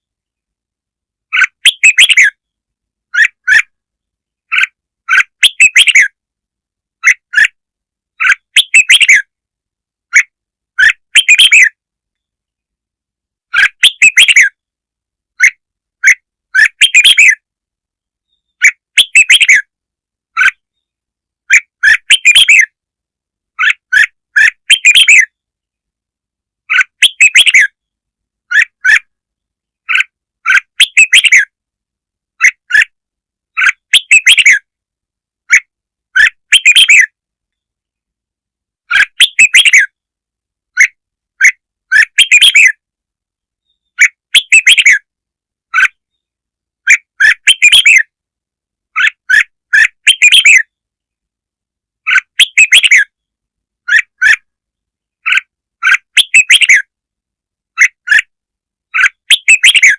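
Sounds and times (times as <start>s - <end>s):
bird warbling song: 1.3s - 3.7s, 4.5s - 6.2s, 7.0s - 7.6s, 8.2s - 9.3s, 10.1s - 11.8s, 13.5s - 14.6s, 15.4s - 17.4s, 18.2s - 19.7s, 21.5s - 22.8s, 23.6s - 25.4s, 26.7s - 27.9s, 28.5s - 29.1s, 29.8s - 31.5s, 32.4s - 32.9s, 33.5s - 34.6s, 35.5s - 37.2s, 38.9s - 40.0s, 40.8s - 42.8s, 43.6s - 45.0s, 45.7s - 46.3s, 46.9s - 48.1s, 49.0s - 50.8s, 52.0s - 53.2s, 53.9s - 54.4s, 55.2s - 56.9s, 57.8s - 58.3s, 58.9s - 59.9s.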